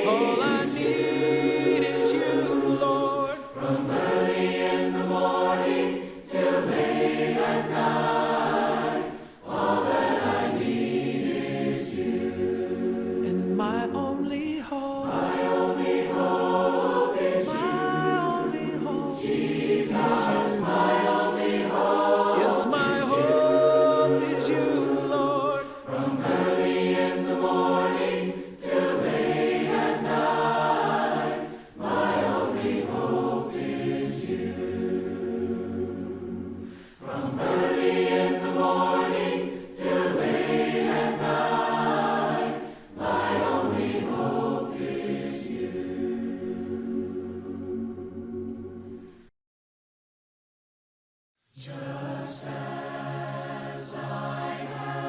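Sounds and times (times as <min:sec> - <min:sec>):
group singing hymn in harmony: 0:00.0 - 0:49.3, 0:51.6 - 0:55.0.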